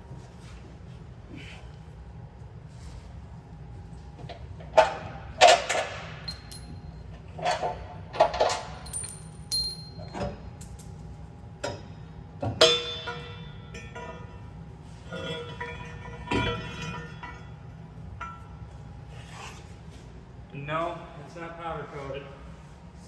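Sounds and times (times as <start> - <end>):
low shop hum: 0.0 - 23.0
metal tools clanking: 6.3 - 6.8, 8.8 - 11.7.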